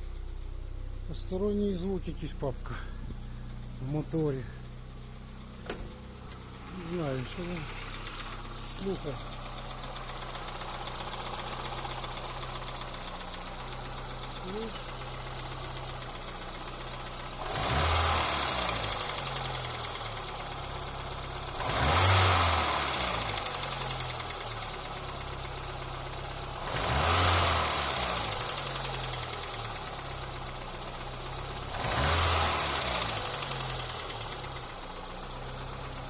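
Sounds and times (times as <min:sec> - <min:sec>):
engine idling and revving: 0:00.0 - 0:36.0
rapid engine knocking: 0:06.7 - 0:34.9.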